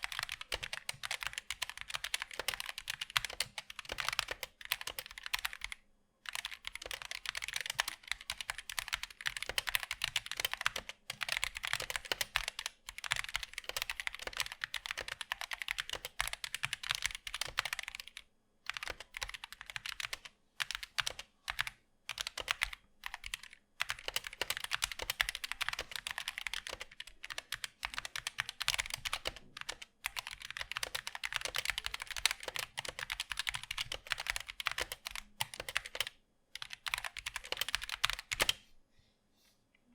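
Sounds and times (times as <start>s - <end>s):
mechanical keyboard typing: 0.0s - 38.6s.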